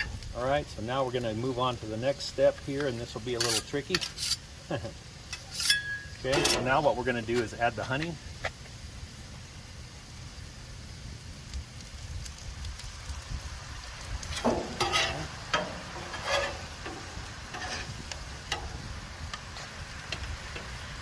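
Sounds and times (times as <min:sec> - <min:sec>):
onions sizzling on a griddle: 0:00.0 - 0:21.0
metal spatula scraping: 0:02.2 - 0:04.5, 0:05.2 - 0:07.6, 0:14.3 - 0:20.7.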